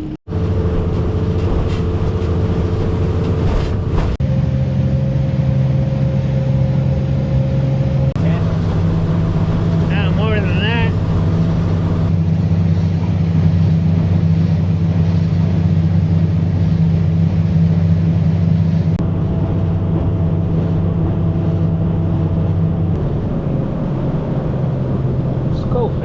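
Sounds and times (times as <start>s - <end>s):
boat motor running: 0.0s - 8.8s, 11.9s - 23.0s.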